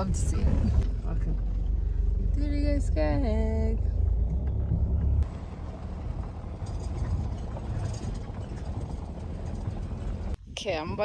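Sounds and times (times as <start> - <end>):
car engine rumbling: 0.0 - 10.9.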